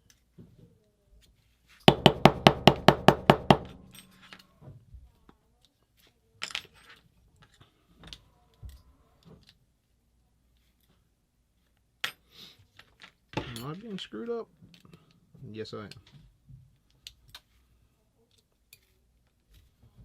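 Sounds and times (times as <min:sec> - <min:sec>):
metal-on-metal tapping: 0:01.9 - 0:04.3.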